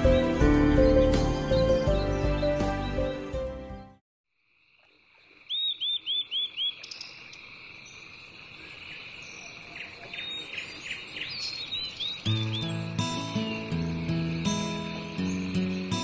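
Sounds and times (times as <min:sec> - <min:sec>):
chirping calls: 0:05.2 - 0:16.0.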